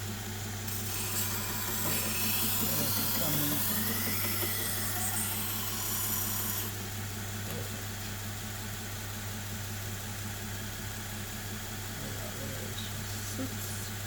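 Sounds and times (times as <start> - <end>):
belt grinder motor hum: 0.0 - 6.8
blade grinding on abrasive belt: 0.0 - 6.8.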